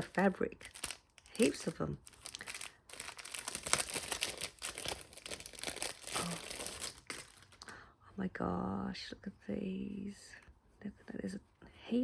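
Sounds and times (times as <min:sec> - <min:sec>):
packaging crinkling and rustling: 0:00.0 - 0:07.7.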